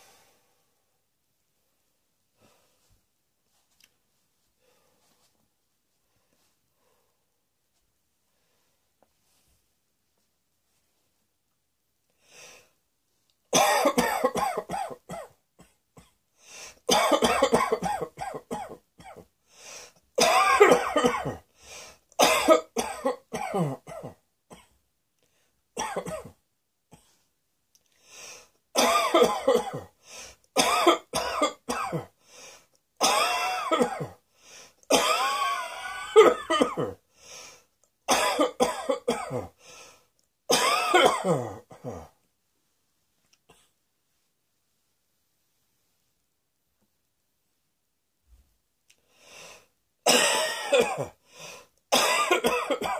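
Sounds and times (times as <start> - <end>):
person coughing: 13.6 - 16.2, 16.9 - 19.3, 20.2 - 21.4, 22.2 - 24.8, 25.8 - 26.4, 28.8 - 30.0, 30.6 - 32.1, 33.0 - 34.2, 34.9 - 37.0, 38.1 - 39.6, 40.5 - 42.2, 50.0 - 51.2, 51.9 - 52.9.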